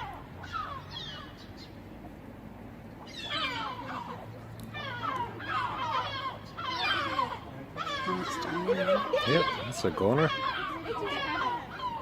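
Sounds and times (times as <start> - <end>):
seagull squawking: 0.0 - 1.8, 3.0 - 12.0.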